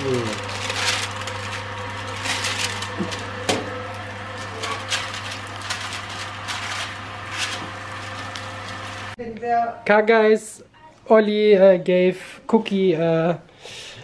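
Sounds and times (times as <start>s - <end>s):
low electrical hum: 0.0s - 13.5s.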